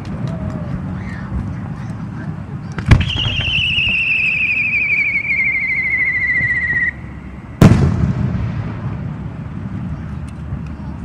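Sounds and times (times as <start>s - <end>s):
firework bang: 2.8s - 4.3s, 7.6s - 9.8s
firework whistle: 2.9s - 7.3s.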